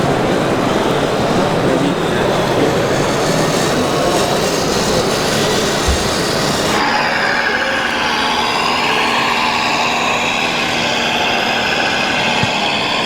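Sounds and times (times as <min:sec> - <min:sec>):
electric motors humming and whining: 0:00.0 - 0:13.0.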